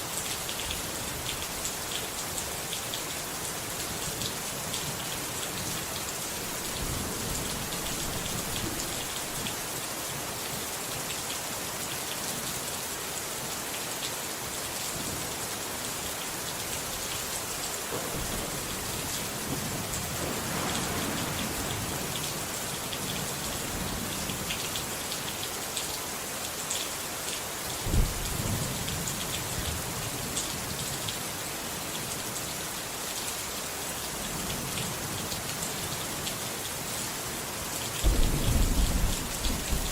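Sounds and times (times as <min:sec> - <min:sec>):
steady rain: 0:00.0 - 0:39.9
thunder crack and rumble: 0:18.0 - 0:24.0, 0:27.9 - 0:28.6, 0:38.0 - 0:39.9.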